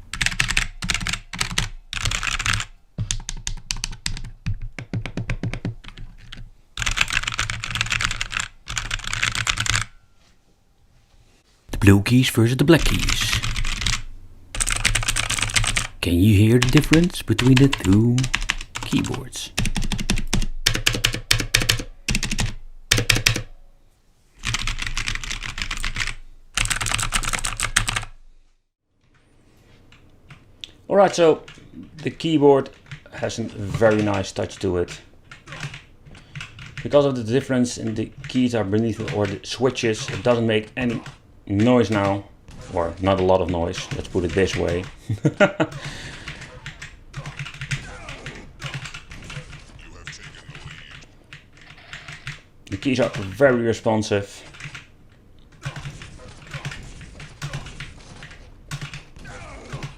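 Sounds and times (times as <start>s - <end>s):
mechanical keyboard typing: 0.1s - 9.9s, 12.7s - 14.0s, 14.6s - 16.0s, 16.6s - 23.5s, 24.4s - 28.1s, 33.8s - 37.0s, 37.8s - 42.2s, 43.4s - 53.4s, 54.4s - 54.9s, 55.5s - 59.1s.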